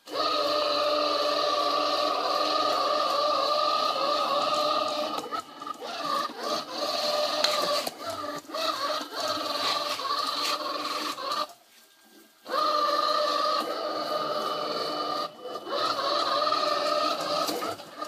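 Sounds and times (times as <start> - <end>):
robot vacuum motor whine: 0.0 - 11.5, 12.5 - 18.0
brushes scraping and rubbing: 2.0 - 12.4.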